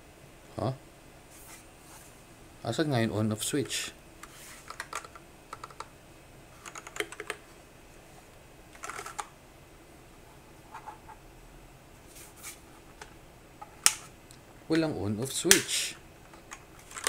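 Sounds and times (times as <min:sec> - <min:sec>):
keyboard keys clicking: 0:06.6 - 0:07.4.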